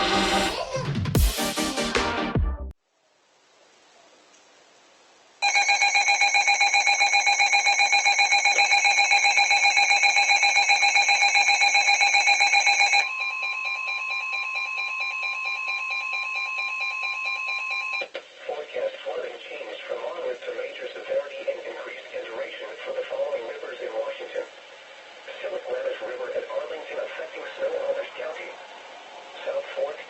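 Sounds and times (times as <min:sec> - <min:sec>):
faint hiss: 0:02.8 - 0:05.4, 0:18.1 - 0:30.0
steady single alarm tone: 0:05.4 - 0:18.0.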